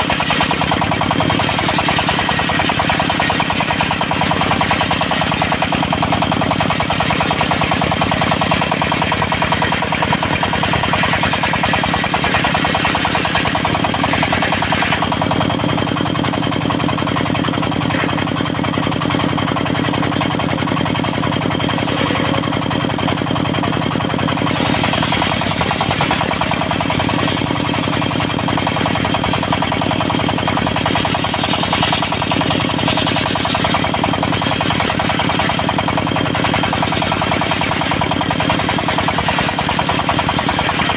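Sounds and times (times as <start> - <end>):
diesel engine chugging: 0.0 - 40.9.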